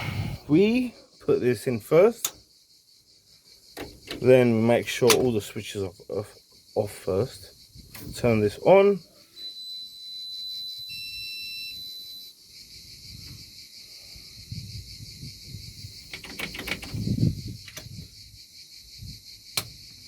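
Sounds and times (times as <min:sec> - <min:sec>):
switch clicks and knocks: 0:03.8 - 0:04.3, 0:05.1 - 0:05.4, 0:16.1 - 0:17.1, 0:17.7 - 0:18.0
high electronic beep tone: 0:09.4 - 0:12.3.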